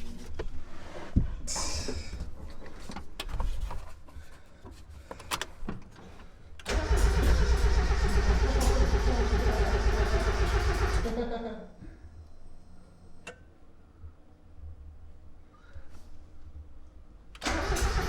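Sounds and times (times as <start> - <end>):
starter cranking engine: 6.6 - 11.2, 17.4 - 18.0.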